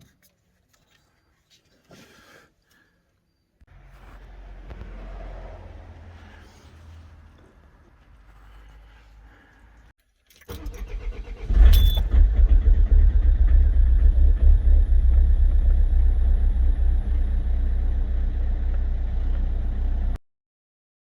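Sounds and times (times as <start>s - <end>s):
diesel engine cranking on starter: 10.5s - 20.2s
diesel engine idling: 10.8s - 20.2s.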